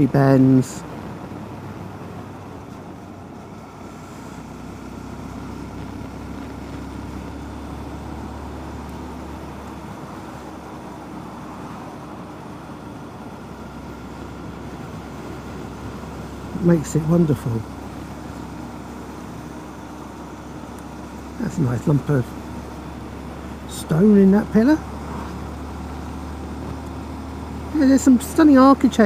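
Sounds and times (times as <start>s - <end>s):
wind and road noise: 0.0s - 29.0s.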